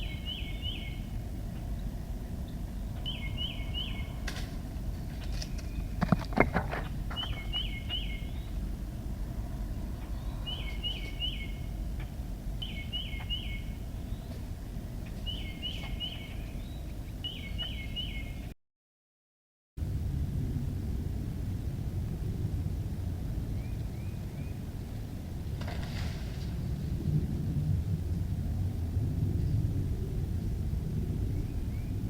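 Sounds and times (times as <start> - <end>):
bird chirping call: 0.0 - 1.1, 1.7 - 4.2, 7.1 - 8.6, 10.0 - 11.8, 12.6 - 14.4, 15.1 - 18.6
low rumble: 0.0 - 18.5, 19.8 - 32.0.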